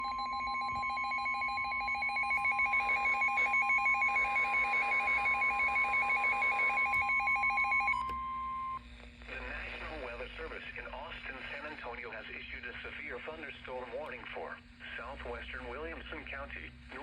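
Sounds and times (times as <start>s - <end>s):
weather radio warning alarm: 0.0s - 8.8s.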